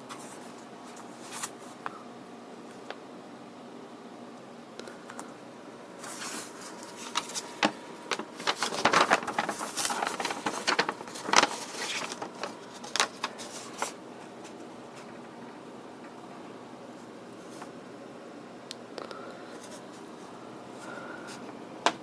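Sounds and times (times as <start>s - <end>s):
paper rustling and crackling: 0.1s - 1.7s, 6.0s - 15.4s.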